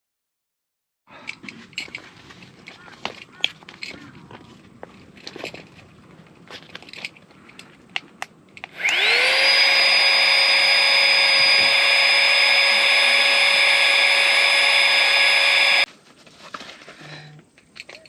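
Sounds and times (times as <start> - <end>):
small electric motor whine: 8.7 - 15.9.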